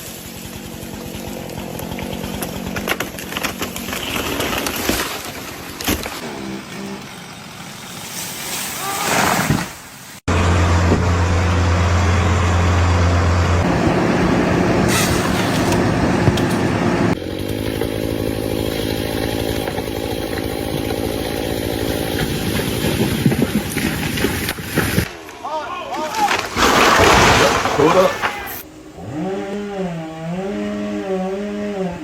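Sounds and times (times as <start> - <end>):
engine humming: 0.0 - 25.4.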